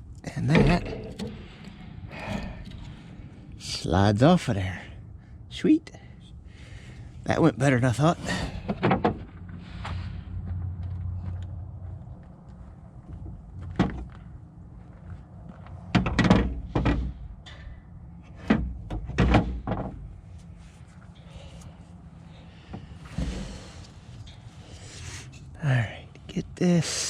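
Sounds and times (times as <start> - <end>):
engine parts clunking: 0.0 - 5.2, 7.9 - 11.6, 15.5 - 25.6.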